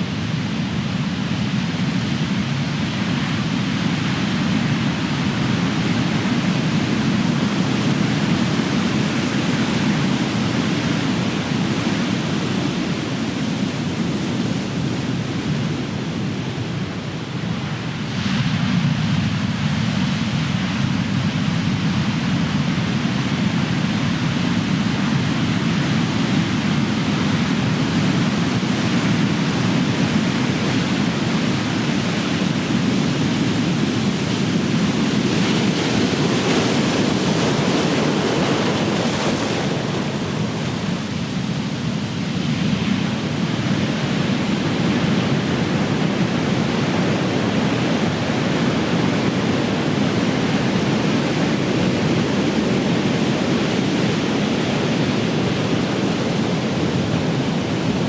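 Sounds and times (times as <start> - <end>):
ocean waves breaking: 24.4 - 58.0.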